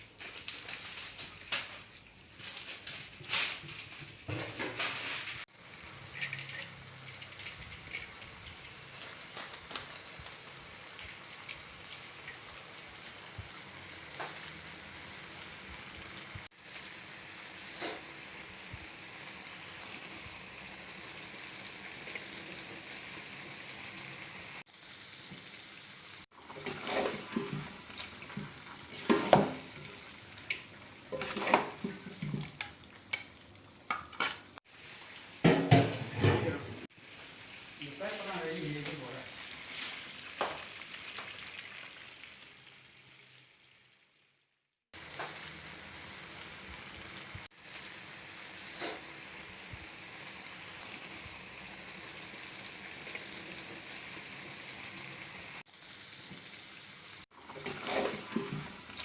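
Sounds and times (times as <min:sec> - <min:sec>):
chicken sizzling in a wok: 0:00.0 - 0:59.0
utensil scraping a wok: 0:26.4 - 0:32.7, 0:48.7 - 0:49.2, 0:57.4 - 0:59.0.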